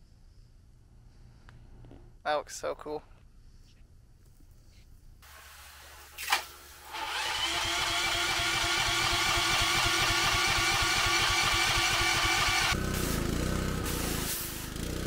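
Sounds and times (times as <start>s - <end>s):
pressure washer running: 5.3s - 15.0s.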